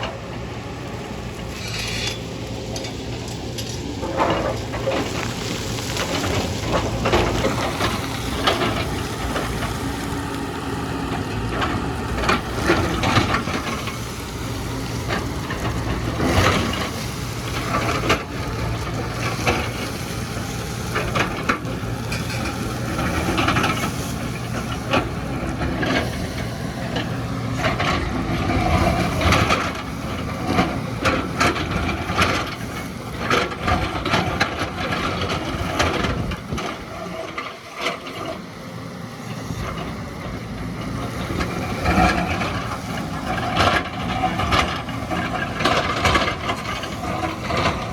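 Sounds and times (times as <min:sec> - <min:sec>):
excavator diesel engine running: 0:00.0 - 0:47.9
bucket crunching earth and rock: 0:01.0 - 0:38.6.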